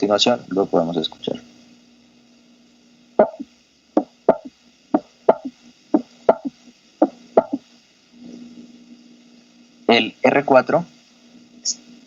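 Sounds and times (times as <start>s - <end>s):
heartbeat with gallop sound: 4.0s - 7.6s.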